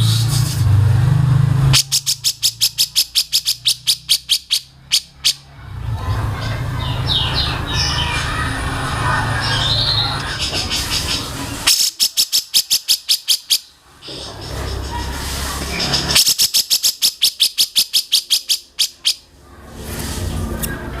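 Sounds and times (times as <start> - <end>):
songbird calling sharp notes: 1.7 - 5.5, 9.4 - 15.1, 15.7 - 19.3.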